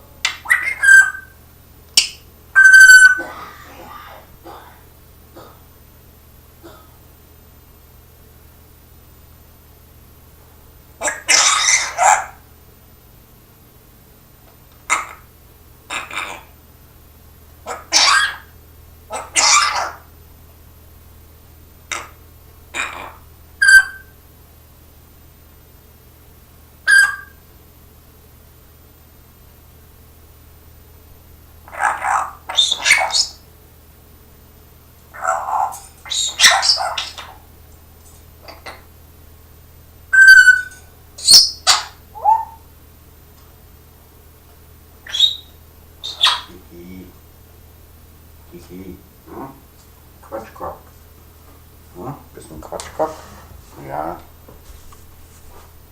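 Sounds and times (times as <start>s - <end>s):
parrot chirp: 0.2s - 1.4s, 2.0s - 3.4s, 11.0s - 12.4s, 14.9s - 15.3s, 15.9s - 16.6s, 17.6s - 20.1s, 21.9s - 24.2s, 26.8s - 27.4s, 31.7s - 33.5s, 35.1s - 37.5s, 40.1s - 42.7s, 45.0s - 46.6s
parrot squawks: 0.3s - 1.4s, 2.0s - 3.4s, 11.0s - 12.4s, 14.9s - 15.3s, 15.9s - 16.6s, 17.6s - 20.1s, 21.9s - 24.2s, 26.9s - 27.4s, 31.7s - 33.4s, 35.1s - 37.4s, 40.1s - 42.6s, 45.0s - 46.6s
parrot whistled note: 2.6s - 3.3s, 23.6s - 24.1s, 26.9s - 27.4s, 40.1s - 42.6s
parrot imitating coughing: 2.7s - 5.6s, 11.0s - 12.3s, 15.9s - 16.6s, 17.7s - 18.4s, 19.1s - 20.0s
parrot raspy breathy sounds: 2.7s - 5.7s, 11.0s - 12.4s, 14.9s - 15.3s, 15.9s - 16.6s, 17.6s - 18.5s, 19.1s - 20.1s, 21.9s - 24.1s, 31.7s - 33.4s, 35.1s - 37.4s, 38.4s - 38.9s.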